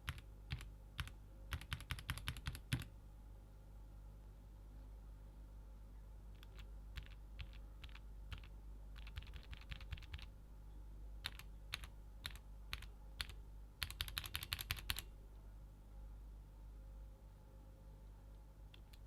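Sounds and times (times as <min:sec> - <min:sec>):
mechanical keyboard typing: 0:00.0 - 0:02.9, 0:06.4 - 0:10.3, 0:11.2 - 0:15.1.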